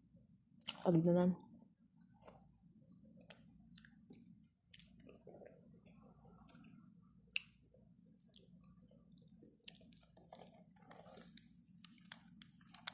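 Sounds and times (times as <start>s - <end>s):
low room hum: 0.0s - 12.9s
soft handling noises: 8.4s - 12.9s.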